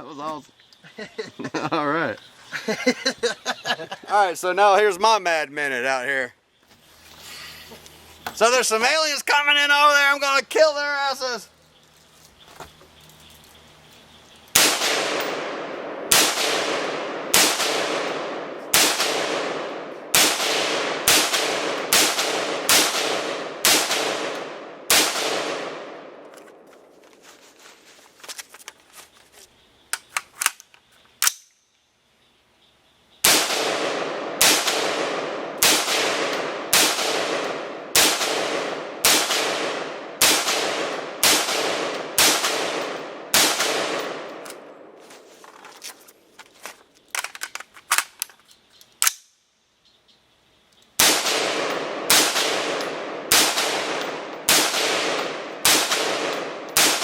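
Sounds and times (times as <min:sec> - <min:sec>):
rifle shots with echo: 0:14.5 - 0:26.7, 0:33.2 - 0:45.0, 0:51.0 - 0:57.0.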